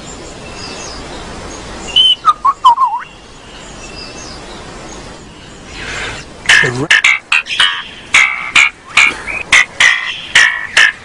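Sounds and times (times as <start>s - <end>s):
steady background hiss: 0.0s - 11.0s
bird whistling: 1.9s - 3.2s.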